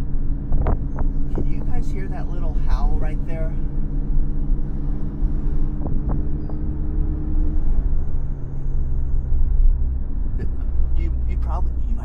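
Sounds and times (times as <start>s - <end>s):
car engine hum inside cabin: 0.0s - 12.0s
road rumble: 0.0s - 12.0s.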